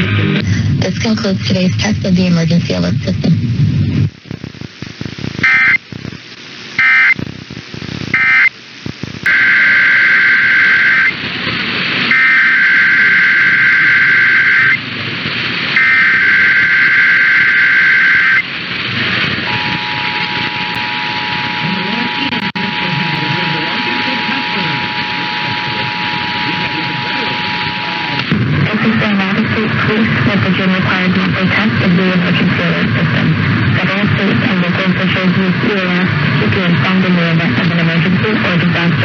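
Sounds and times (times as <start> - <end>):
background hiss: 0.0 - 28.7
two-tone attention signal: 12.1 - 14.8, 15.8 - 18.4, 19.5 - 28.2
warbling digital data tones: 15.8 - 18.5, 19.4 - 28.2.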